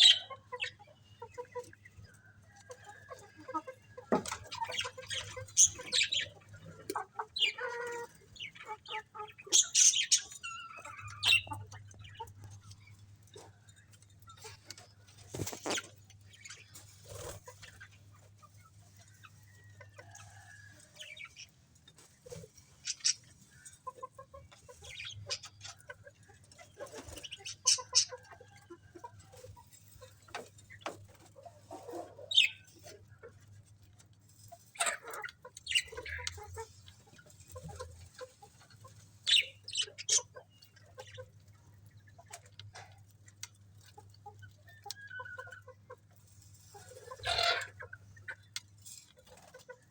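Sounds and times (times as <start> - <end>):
budgerigars chirping: 0.0 - 0.9, 4.5 - 6.4, 7.4 - 7.6, 8.4 - 12.3, 27.2 - 28.2, 35.7 - 36.5, 39.3 - 41.2.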